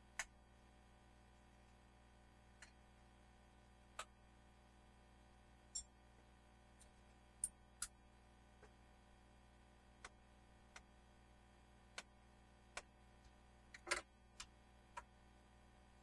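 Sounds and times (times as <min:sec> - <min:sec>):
clicks and taps of small hard objects: 0:12.7 - 0:15.1.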